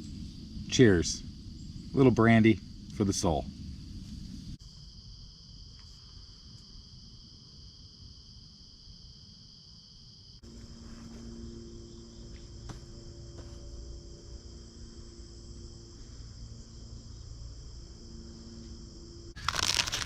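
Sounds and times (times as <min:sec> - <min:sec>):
low steady hum: 0:00.0 - 0:05.7, 0:10.4 - 0:20.0
crickets and insects chirring: 0:00.0 - 0:20.0.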